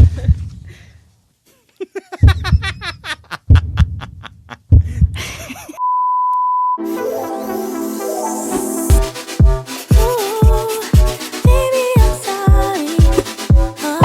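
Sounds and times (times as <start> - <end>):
upbeat music with heavy kick drums: 8.9 - 14.0.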